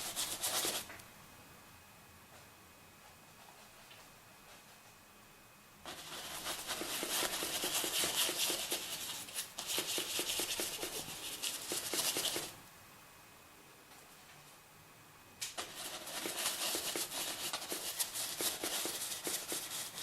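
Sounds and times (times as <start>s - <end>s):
paintbrush scrubbing on canvas: 0.0s - 0.9s, 5.9s - 12.6s, 15.6s - 20.0s.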